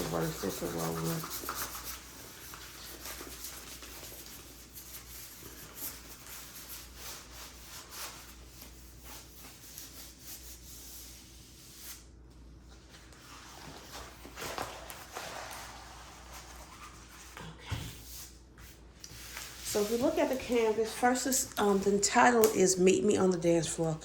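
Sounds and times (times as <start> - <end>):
canvas rustling and scraping: 12.8 - 17.3, 18.1 - 22.2.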